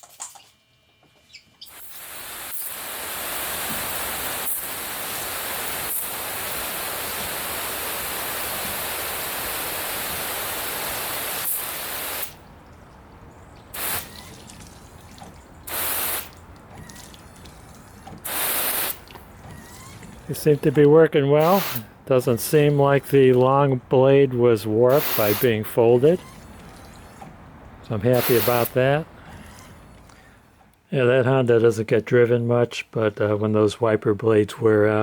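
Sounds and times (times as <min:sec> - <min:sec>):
water spraying onto windshield: 0:01.7 - 0:13.0, 0:13.6 - 0:20.8, 0:24.9 - 0:25.8, 0:28.1 - 0:28.8.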